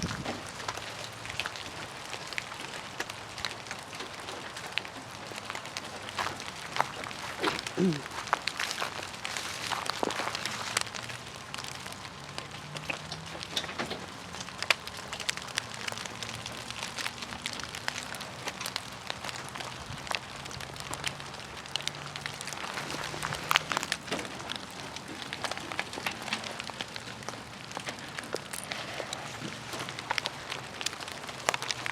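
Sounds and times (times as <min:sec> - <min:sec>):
ice pieces pattering on ground: 0:00.0 - 0:31.9.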